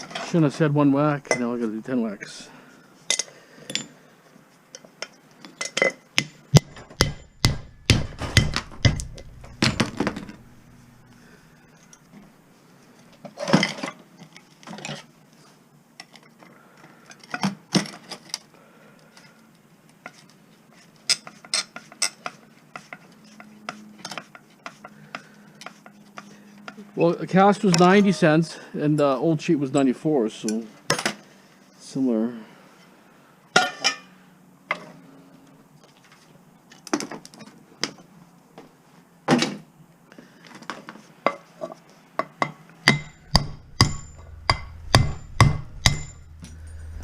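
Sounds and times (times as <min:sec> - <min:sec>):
hammer striking scrap metal: 0:06.5 - 0:11.3, 0:42.9 - 0:47.0.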